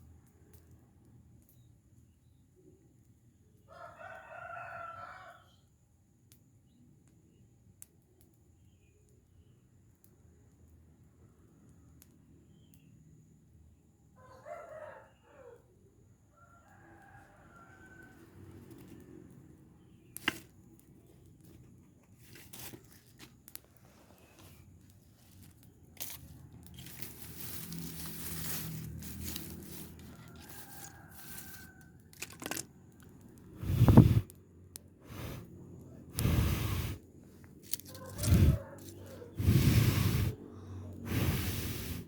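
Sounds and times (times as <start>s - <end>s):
rooster crowing faintly: 3.7s - 5.6s, 14.2s - 19.3s, 26.8s - 32.6s, 37.7s - 41.5s
fire crackling and rustling: 17.0s - 42.0s.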